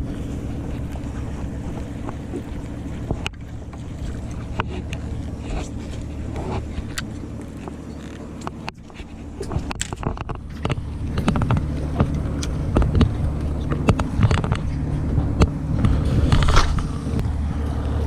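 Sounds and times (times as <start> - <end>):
boat engine humming: 0.0 - 18.0
wind noise: 0.0 - 18.0.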